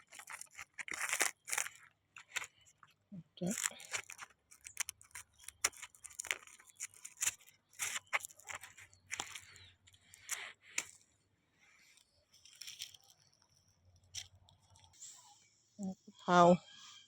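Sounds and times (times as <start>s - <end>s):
crunching and tearing rustles: 0.0s - 11.0s, 12.3s - 15.0s.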